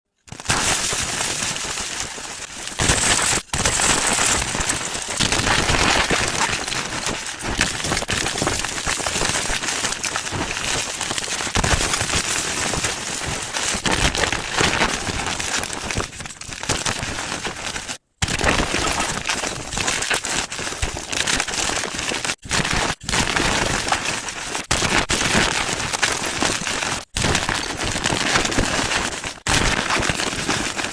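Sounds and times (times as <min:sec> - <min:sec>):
chalk crunching and crackling: 0:00.3 - 0:18.0.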